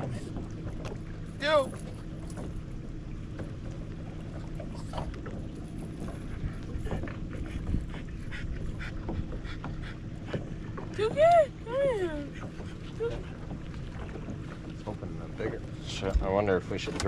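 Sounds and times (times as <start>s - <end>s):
boat motor humming: 0.0s - 17.0s
dog panting: 7.3s - 10.4s.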